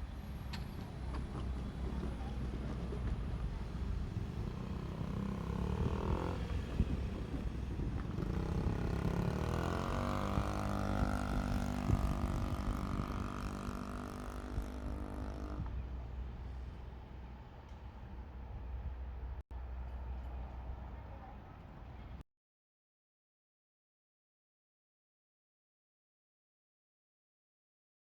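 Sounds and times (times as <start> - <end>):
wheels clattering on track: 0.0 - 18.6
diesel railcar engine rising: 0.0 - 22.2.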